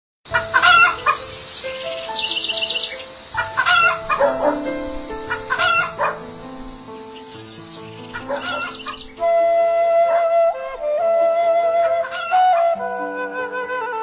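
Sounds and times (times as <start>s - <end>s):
chicken calls: 0.3s - 9.2s, 12.1s - 12.4s
background music with held notes: 0.3s - 14.0s.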